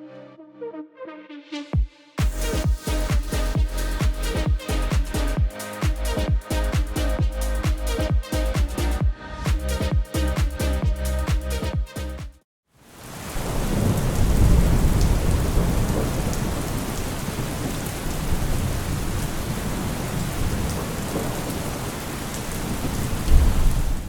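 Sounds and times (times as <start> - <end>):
heavy rain falling: 2.2 - 11.6, 12.9 - 24.0
thunder rumbling: 13.4 - 17.2, 22.8 - 24.0.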